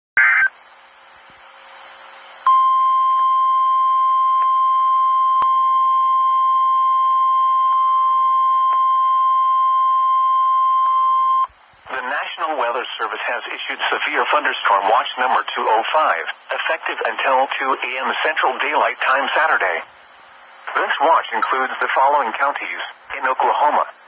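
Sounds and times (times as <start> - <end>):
faint radio hiss: 0.2 - 2.5, 11.5 - 24.0
steady high alarm tone: 2.5 - 11.5.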